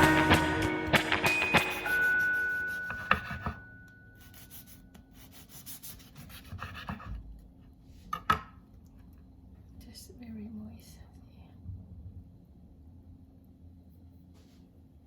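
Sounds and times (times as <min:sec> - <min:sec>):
background music: 0:00.0 - 0:03.5
knife rasping through bread: 0:04.2 - 0:07.2.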